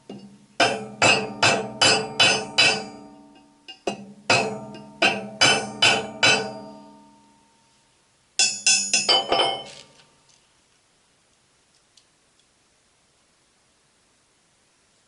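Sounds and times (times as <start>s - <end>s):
hammer blows on steel: 0.0s - 7.6s, 8.4s - 9.7s.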